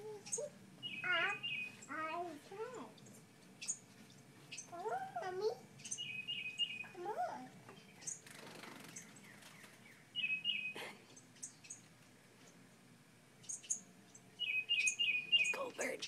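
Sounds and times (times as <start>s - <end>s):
wren trilling: 0.0s - 3.9s, 5.8s - 7.0s, 7.8s - 11.9s, 13.4s - 16.0s
thin high bird chirps: 0.2s - 1.9s, 3.0s - 4.8s, 5.8s - 7.0s, 13.4s - 15.7s.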